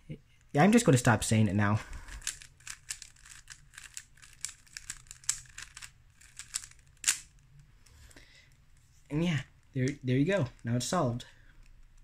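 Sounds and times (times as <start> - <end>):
puzzle cube plastic clicks: 2.0 - 7.4.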